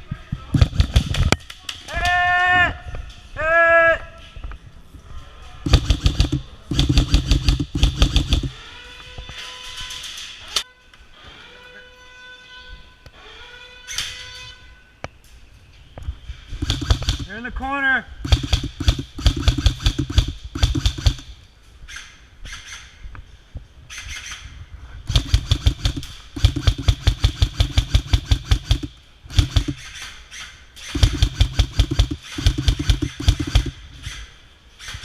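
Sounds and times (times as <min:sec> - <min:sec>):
airsoft guns firing full-auto: 0:00.5 - 0:01.3, 0:05.6 - 0:08.7, 0:16.6 - 0:17.4, 0:18.2 - 0:21.4, 0:25.1 - 0:30.2, 0:30.8 - 0:33.9.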